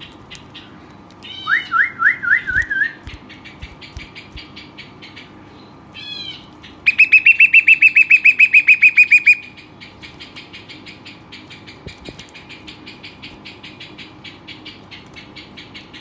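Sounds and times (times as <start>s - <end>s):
bird singing fast trill: 1.3s - 10.0s.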